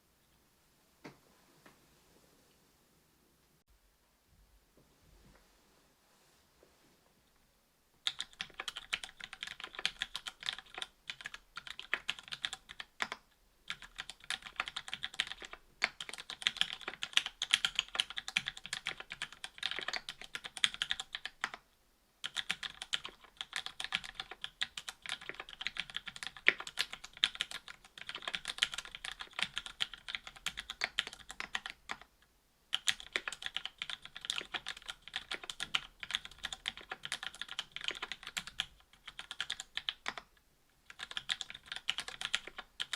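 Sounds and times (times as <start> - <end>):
mechanical keyboard typing: 8.0 - 21.6, 22.2 - 32.1, 32.7 - 40.3, 40.9 - 42.9.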